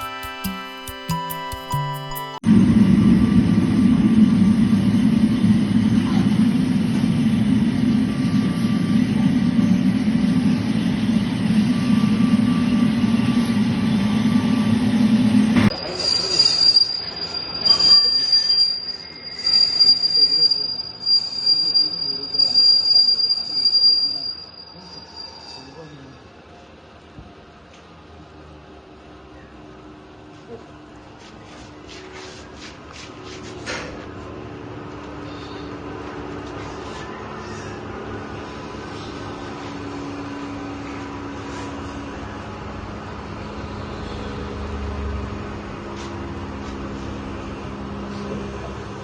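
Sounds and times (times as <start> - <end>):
loud low machine noise: 1.8 - 16.4, 26.7 - 49.0
surging mechanical noise: 2.4 - 24.3
high-pitched squeal: 6.5 - 26.7, 35.2 - 48.7.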